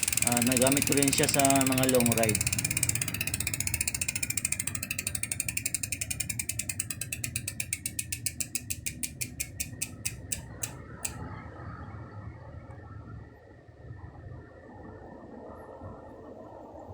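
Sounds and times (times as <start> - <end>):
bicycle hub ratchet clicking: 0.0 - 11.2.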